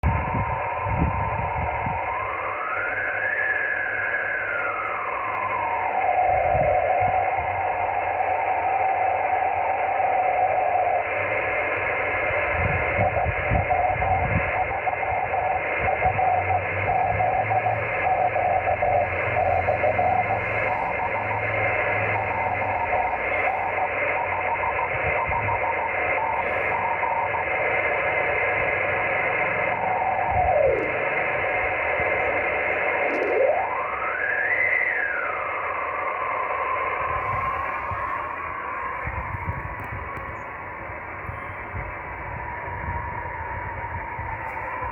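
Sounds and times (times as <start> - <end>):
steady radio hiss: 0.0 - 44.9
wavering radio beat tone: 0.0 - 44.9.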